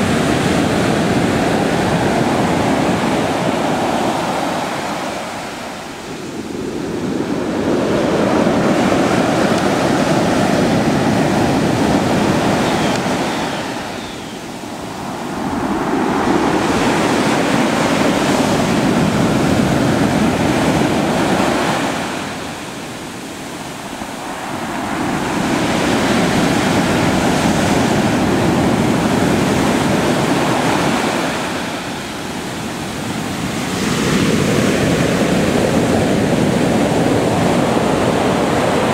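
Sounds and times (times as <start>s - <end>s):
surf washing in: 0.0s - 38.9s.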